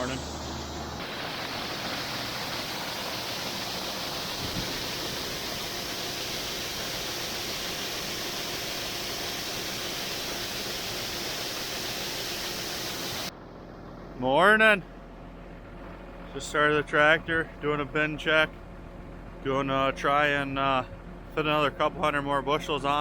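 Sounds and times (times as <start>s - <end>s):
steady rushing noise: 0.0s - 13.3s.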